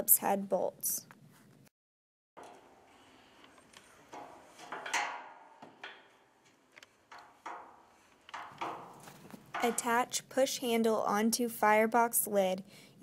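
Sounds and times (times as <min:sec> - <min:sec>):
soft knocks and clatters: 0:02.4 - 0:09.9.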